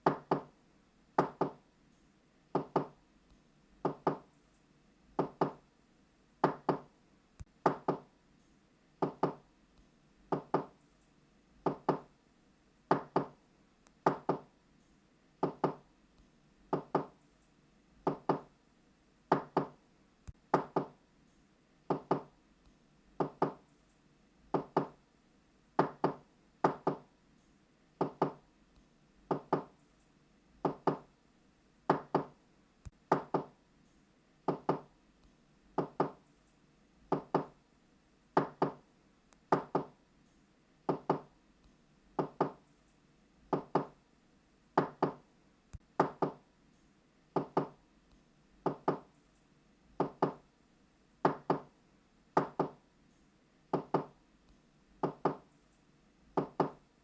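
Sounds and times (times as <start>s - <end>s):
knocking on a door: 0.0s - 0.5s, 1.2s - 1.6s, 2.6s - 3.0s, 3.8s - 4.3s, 5.2s - 5.6s, 6.4s - 6.9s, 7.6s - 8.1s, 9.0s - 9.4s, 10.3s - 10.7s, 11.6s - 12.1s, 12.9s - 13.4s, 14.0s - 14.5s, 15.4s - 15.8s, 16.7s - 17.1s, 18.0s - 18.5s, 19.3s - 19.8s, 20.5s - 21.0s, 21.9s - 22.3s, 23.2s - 23.6s, 24.5s - 25.0s, 25.8s - 27.0s, 28.0s - 28.4s, 29.3s - 29.7s, 30.6s - 31.1s, 31.9s - 32.3s, 33.1s - 33.6s, 34.5s - 34.9s, 35.8s - 36.2s, 37.1s - 37.5s, 38.4s - 38.8s, 39.5s - 39.9s, 40.9s - 41.3s, 42.2s - 42.6s, 43.5s - 43.9s, 44.8s - 45.2s, 46.0s - 46.4s, 47.4s - 47.8s, 48.6s - 49.1s, 50.0s - 50.4s, 51.2s - 51.7s, 52.4s - 52.8s, 53.7s - 54.1s, 55.0s - 55.4s, 56.4s - 56.8s.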